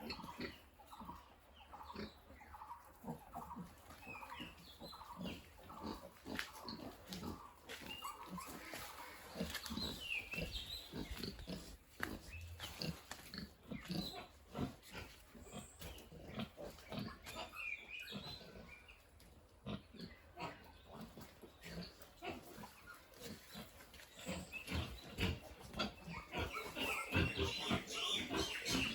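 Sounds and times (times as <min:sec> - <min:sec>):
pigs grunting: 0:00.0 - 0:28.9
pig squeals: 0:24.2 - 0:28.9.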